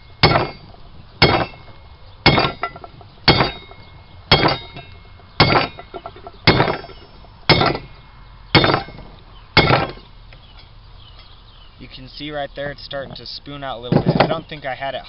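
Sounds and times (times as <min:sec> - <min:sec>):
hammer striking rebar on anvil: 0:00.0 - 0:10.1.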